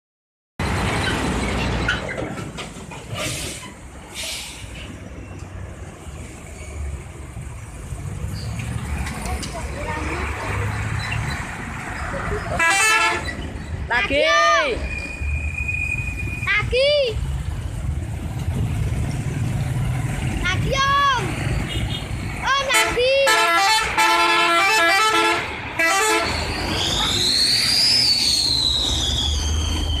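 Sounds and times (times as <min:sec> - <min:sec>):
bus passing by: 0:00.6 - 0:30.0
short air hisses: 0:03.2 - 0:04.9
multi-tone bus horn: 0:12.5 - 0:13.4, 0:22.6 - 0:26.5.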